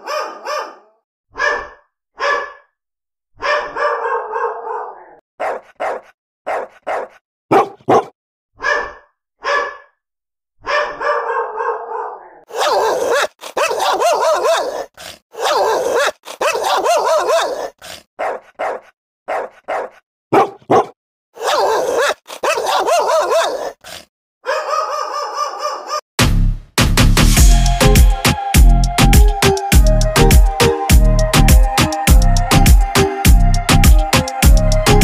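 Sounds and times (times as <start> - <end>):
dog barking: 0.0 - 2.7, 3.4 - 10.0, 10.6 - 26.0
music: 26.2 - 35.0.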